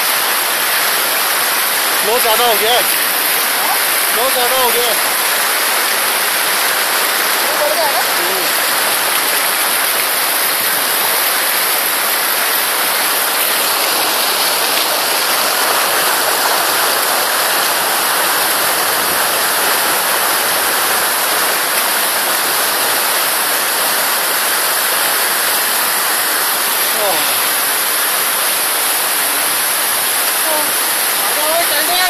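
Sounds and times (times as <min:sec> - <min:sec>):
stream rushing over stones: 0:00.0 - 0:32.0.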